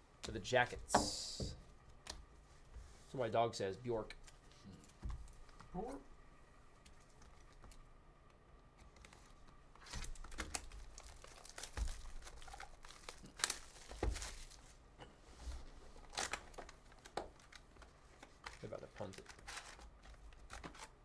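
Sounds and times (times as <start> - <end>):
card pack wrappers crinkling: 8.9 - 14.8, 16.0 - 21.0
cards being handled: 16.0 - 21.0.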